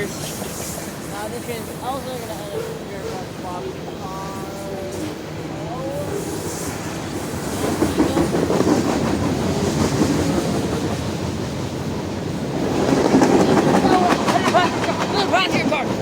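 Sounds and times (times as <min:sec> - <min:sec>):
train wheels clacking over rail joints: 0:06.0 - 0:16.0.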